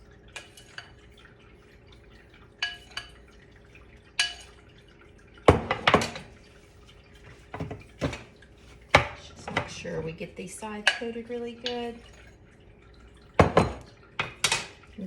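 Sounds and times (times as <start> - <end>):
dishes and utensils clinking: 2.6 - 3.4, 4.1 - 4.6, 5.5 - 6.4, 8.9 - 9.9, 13.4 - 14.8.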